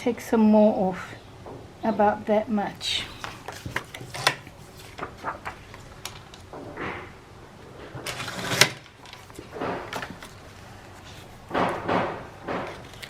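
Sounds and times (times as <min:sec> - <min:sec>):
paper rustling: 0:02.9 - 0:07.1, 0:07.8 - 0:13.0.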